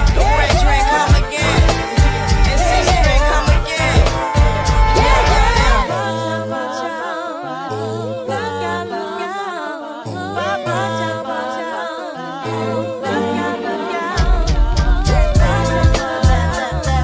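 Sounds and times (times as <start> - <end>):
drum beat: 0.0 - 5.9, 14.2 - 16.6
sustained bass notes: 0.0 - 6.0, 14.2 - 17.0
sung vocal harmonies: 0.0 - 17.0.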